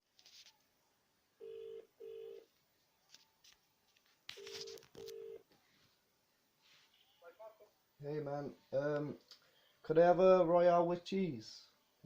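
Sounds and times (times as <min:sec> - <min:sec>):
telephone ringback tone: 0:01.4 - 0:02.5, 0:04.4 - 0:05.4.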